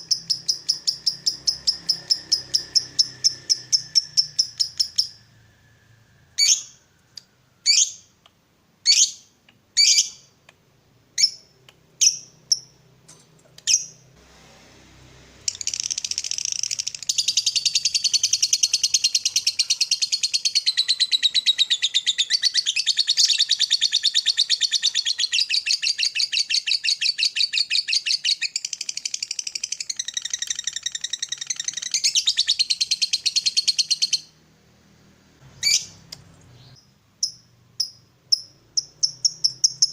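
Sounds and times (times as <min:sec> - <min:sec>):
lovebird shrill calls: 0:00.0 - 0:05.3
lovebird rattling chatter: 0:15.5 - 0:20.2.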